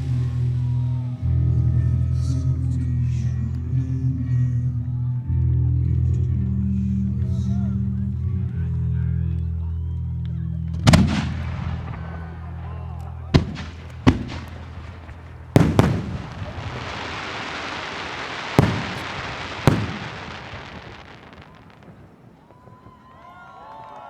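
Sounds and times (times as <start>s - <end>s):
fireworks crackling hiss: 0.0s - 1.1s, 13.3s - 23.0s
crowd voices: 0.0s - 24.0s
people whistling: 8.6s - 23.9s
firework shell bursts: 13.4s - 22.2s.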